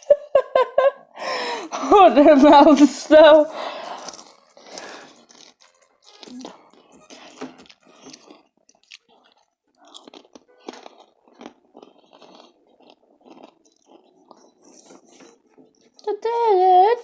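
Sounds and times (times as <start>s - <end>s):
person chewing crunchy food: 3.5s - 16.1s.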